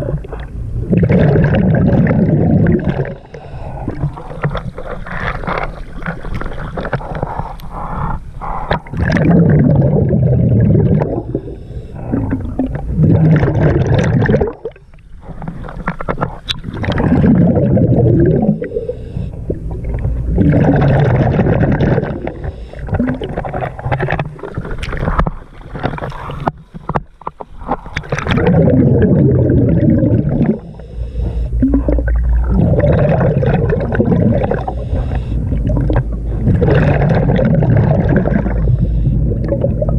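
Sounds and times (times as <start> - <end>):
exhaled bubbles gurgling: 0.0 - 39.9
diver breathing through regulator: 2.5 - 9.0, 9.9 - 13.5, 14.5 - 19.7, 20.4 - 23.9, 24.5 - 37.1, 38.1 - 39.9.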